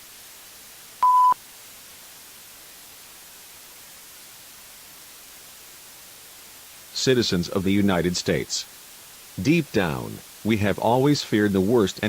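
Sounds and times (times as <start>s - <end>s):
background hiss: 0.0s - 12.0s
short electronic beep: 1.0s - 1.4s.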